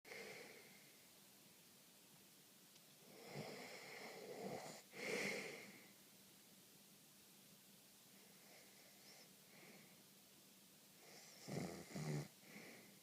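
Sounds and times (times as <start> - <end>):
person snoring: 11.1 - 12.8.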